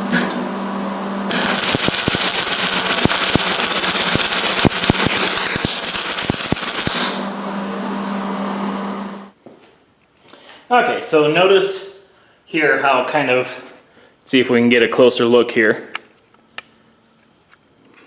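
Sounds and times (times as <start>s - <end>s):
steady hum: 0.0s - 18.0s
welding arc crackling and popping: 1.3s - 7.3s.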